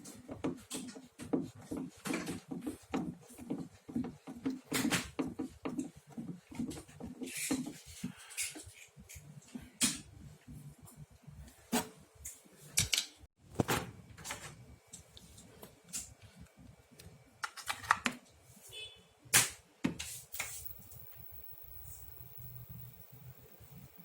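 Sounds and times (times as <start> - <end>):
faint high-pitched whine: 20.3 - 24.0
hard objects clicking and knocking: 20.3 - 24.0.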